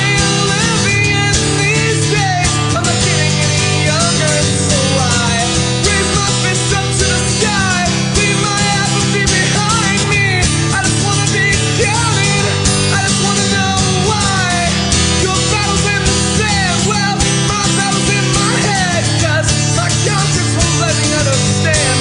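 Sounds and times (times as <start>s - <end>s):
bass guitar: 0.0s - 22.0s
electric guitar bending lead notes: 0.0s - 22.0s
steady drum beat: 0.0s - 22.0s.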